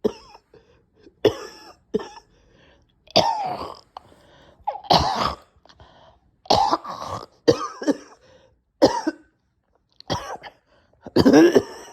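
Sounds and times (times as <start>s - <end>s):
person coughing: 0.0s - 0.4s, 1.2s - 2.3s, 3.2s - 3.8s, 4.7s - 5.5s, 6.5s - 8.2s, 8.8s - 9.3s, 10.1s - 11.9s
person clearing throat: 4.7s - 5.5s, 8.8s - 9.2s, 11.1s - 11.9s.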